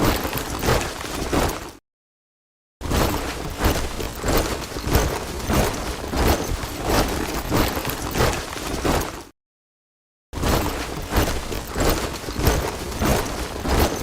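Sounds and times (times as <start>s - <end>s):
soldiers marching in step: 3.1s - 9.3s, 10.6s - 14.0s.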